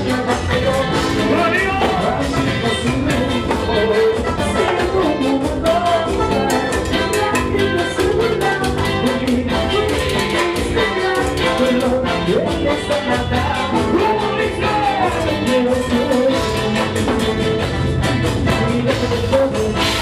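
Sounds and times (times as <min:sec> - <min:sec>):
latin band music: 0:00.0 - 0:20.0
person singing: 0:00.0 - 0:20.0.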